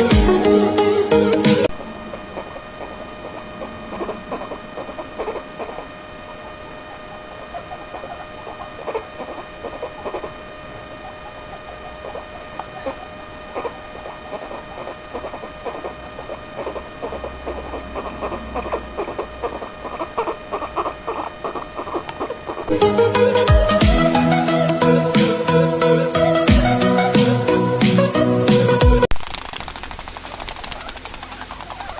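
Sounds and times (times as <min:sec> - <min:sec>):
steady electrical hum: 0:01.6 - 0:27.6
guinea pig squeaking: 0:02.1 - 0:22.7, 0:29.3 - 0:31.9.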